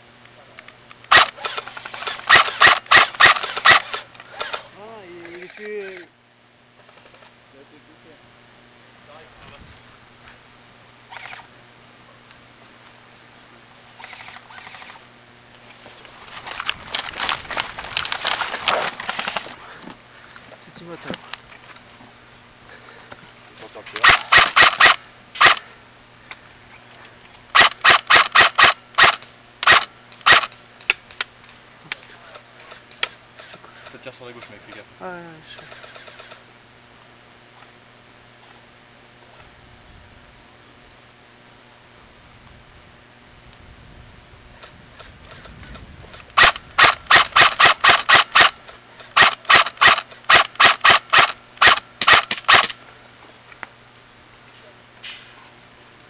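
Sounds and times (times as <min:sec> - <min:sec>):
airsoft gun shots: 0:01.1 - 0:04.6, 0:24.0 - 0:25.6, 0:27.5 - 0:30.6, 0:46.4 - 0:52.8.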